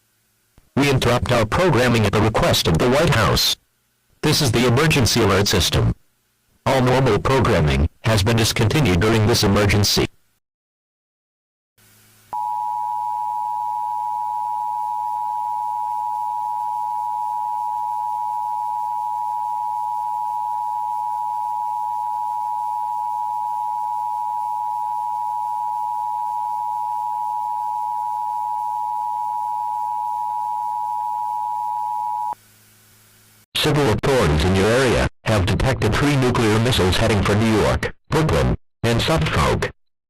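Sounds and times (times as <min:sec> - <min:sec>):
faint low hum: 0:11.9 - 0:33.3.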